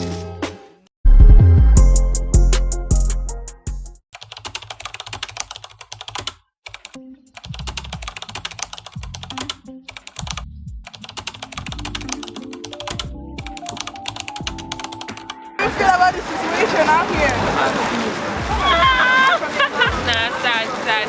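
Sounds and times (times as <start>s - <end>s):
computer keyboard typing: 4.2s - 15.4s
background music: 8.8s - 20.4s.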